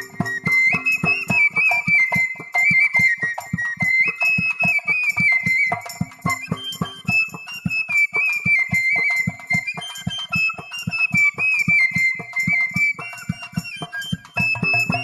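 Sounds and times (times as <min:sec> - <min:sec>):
steady drum beat: 0:00.0 - 0:02.5
bamboo flute melody: 0:00.0 - 0:15.0.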